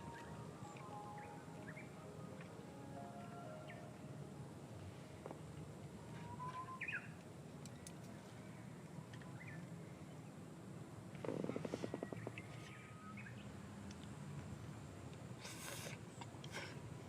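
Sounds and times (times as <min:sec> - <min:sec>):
faint bird chirps: 0:06.0 - 0:10.2, 0:11.8 - 0:13.5
short hiss: 0:15.4 - 0:16.8.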